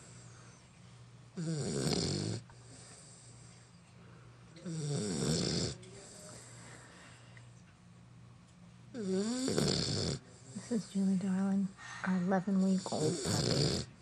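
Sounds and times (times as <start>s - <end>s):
puppy snoring: 1.4s - 3.6s, 4.6s - 6.5s, 8.9s - 10.9s, 12.5s - 14.0s.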